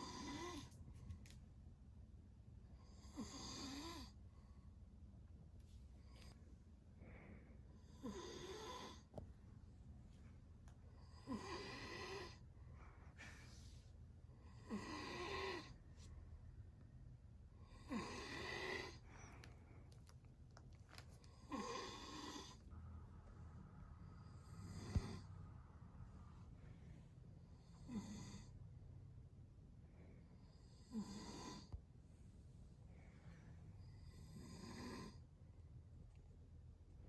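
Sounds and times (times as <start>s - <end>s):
man snoring: 3.0s - 4.1s, 7.9s - 9.0s, 11.1s - 12.4s, 14.5s - 15.7s, 17.7s - 19.0s, 21.5s - 22.6s, 27.7s - 28.5s, 30.8s - 31.7s.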